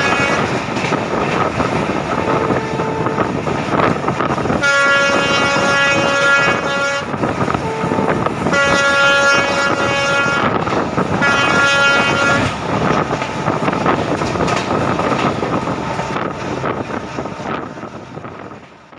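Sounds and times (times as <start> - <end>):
diesel locomotive horn blasts: 0.0 - 0.6, 2.1 - 3.5, 4.5 - 12.7
passing train noise: 0.0 - 18.9
wind on microphone: 0.0 - 18.9.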